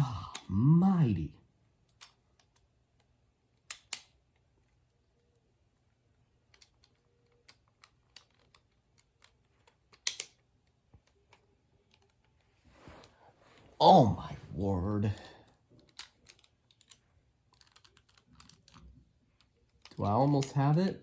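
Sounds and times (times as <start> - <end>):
plastic toy parts clicking: 1.9 - 4.4, 6.4 - 12.5, 15.5 - 21.0.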